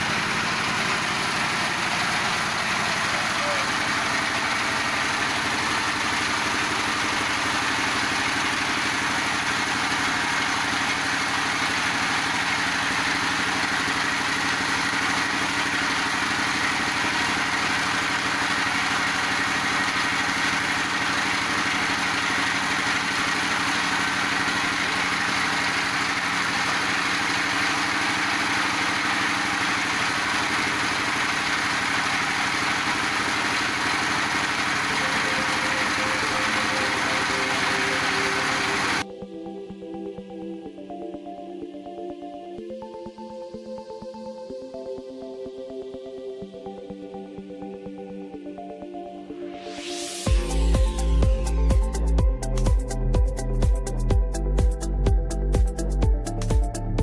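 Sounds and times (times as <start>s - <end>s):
pellet machine mechanical drone: 0.0s - 39.0s.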